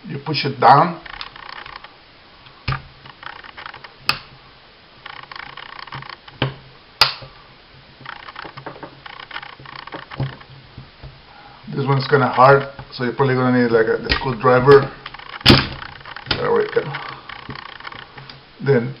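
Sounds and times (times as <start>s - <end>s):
pistol parts rattling: 1.0s - 4.4s, 5.0s - 7.4s, 8.0s - 10.6s, 14.1s - 18.4s
sharp clicks: 1.0s - 4.4s, 5.0s - 7.4s, 8.0s - 10.5s, 14.0s - 18.4s.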